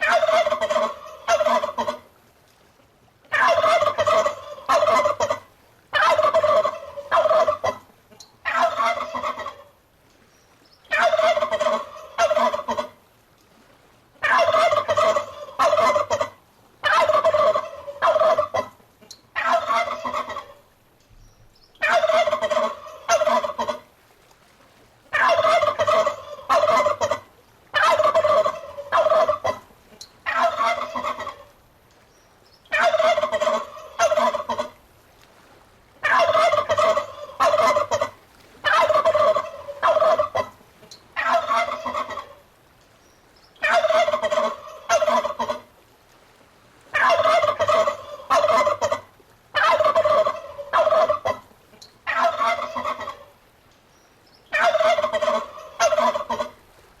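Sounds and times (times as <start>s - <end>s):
turkey gobbling: 0.0s - 2.0s, 3.3s - 9.7s, 10.9s - 13.0s, 14.2s - 20.6s, 21.8s - 23.8s, 25.1s - 31.5s, 32.7s - 34.8s, 36.0s - 42.4s, 43.6s - 45.7s, 46.9s - 53.3s, 54.5s - 56.6s.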